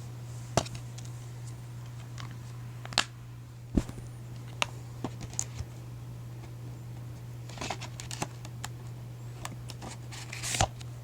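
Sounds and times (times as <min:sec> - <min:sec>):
steady low hum: 0:01.2 - 0:07.0.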